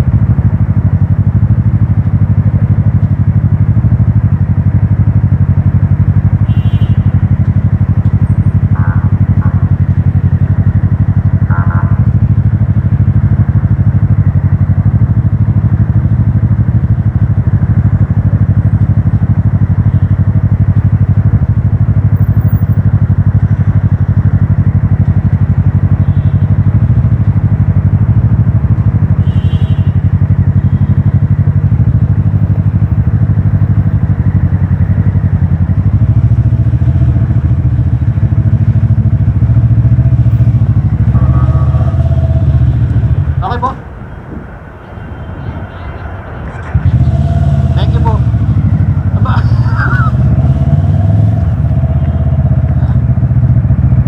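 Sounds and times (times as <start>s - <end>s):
motorcycle engine droning: 0.0s - 54.0s
brief high-pitched tones: 41.1s - 42.7s
wind noise: 42.9s - 47.9s.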